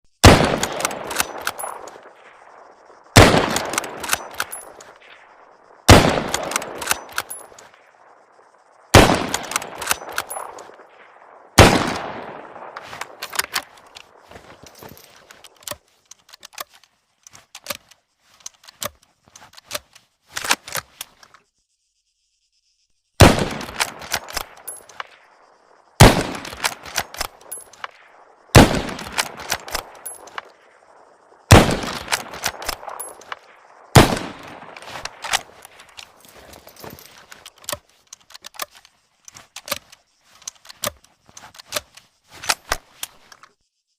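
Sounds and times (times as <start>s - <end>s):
rifle shots: 0.2s - 5.3s, 5.9s - 7.5s, 8.9s - 14.2s, 23.2s - 25.2s, 26.0s - 27.9s, 28.5s - 30.5s, 31.5s - 36.2s
rifle bolt metallic clicks: 0.5s - 2.1s, 3.2s - 5.0s, 6.1s - 7.8s, 9.0s - 10.7s, 12.7s - 21.4s, 23.5s - 25.2s, 26.2s - 28.0s, 28.6s - 30.5s, 31.8s - 33.4s, 34.0s - 43.5s.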